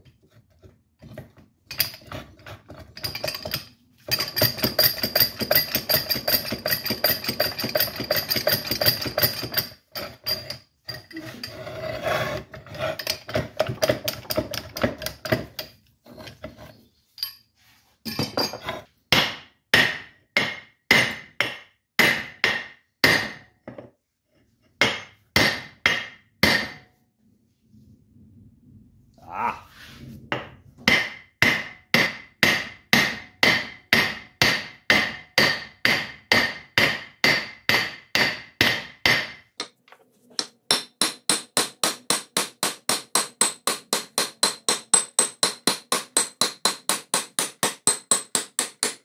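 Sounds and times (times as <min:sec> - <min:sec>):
hammer striking steel: 0:24.8 - 0:26.9.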